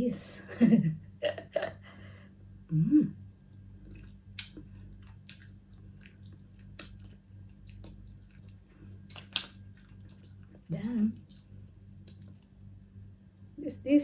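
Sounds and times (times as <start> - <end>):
low electrical hum: 0.0 - 14.0
wet squishy chewing: 3.8 - 12.7.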